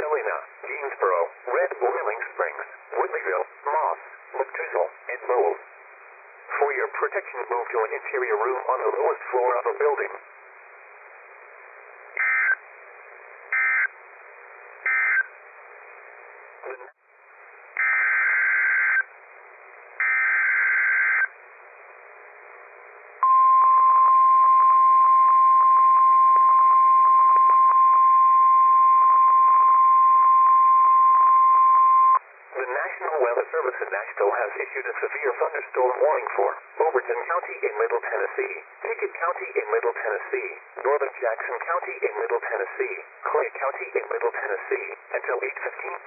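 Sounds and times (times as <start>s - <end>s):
radio static: 0.0s - 5.6s, 6.5s - 10.2s, 12.1s - 12.6s, 16.6s - 17.0s, 32.5s - 46.0s
piercing steady alarm tone: 12.2s - 12.6s, 13.5s - 14.0s, 14.8s - 15.3s, 17.8s - 19.1s, 20.0s - 21.4s.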